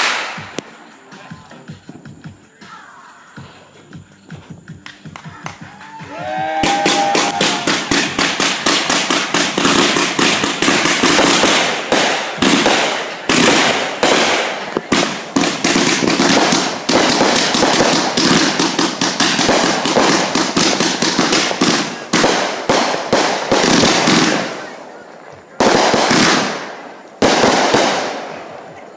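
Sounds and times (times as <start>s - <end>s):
fireworks crackling pops: 0.0s - 2.8s, 3.9s - 28.9s.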